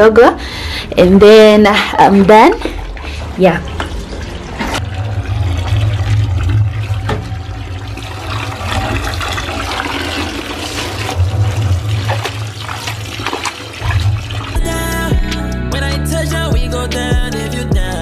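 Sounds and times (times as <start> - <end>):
water sloshing and splashing: 1.8 - 14.7.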